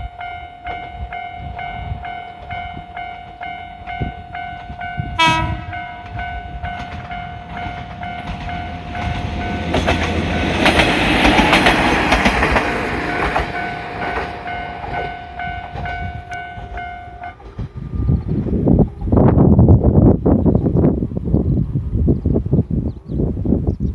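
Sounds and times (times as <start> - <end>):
level crossing bell ringing: 0.0 - 10.6, 13.1 - 17.4
train wheels clacking over rails: 0.6 - 19.2.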